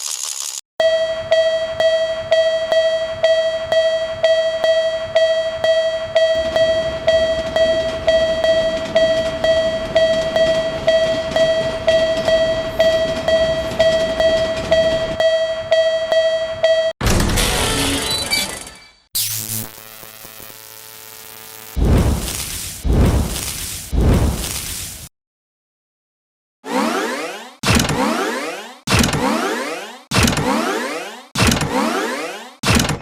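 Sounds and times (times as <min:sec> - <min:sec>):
railroad crossing bell clanging: 0:00.8 - 0:16.9
passing train: 0:05.0 - 0:15.8.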